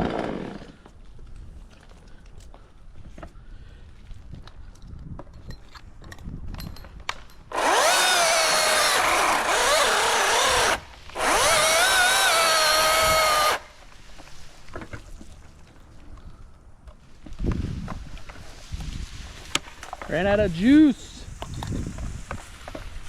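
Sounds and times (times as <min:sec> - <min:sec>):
chainsaw whining and cutting wood: 0:00.0 - 0:01.0, 0:07.5 - 0:13.8.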